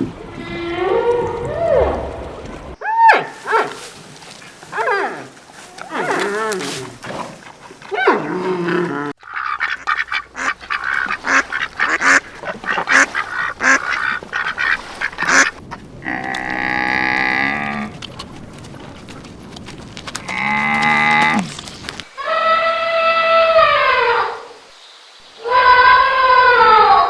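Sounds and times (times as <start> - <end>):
ducks quacking: 3.1 - 16.6
long drawn-out animal calls: 22.2 - 24.6.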